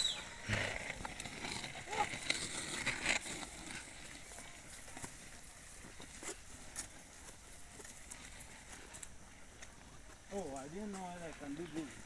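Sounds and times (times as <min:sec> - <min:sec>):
soft footsteps in loose soil: 0:00.0 - 0:12.0.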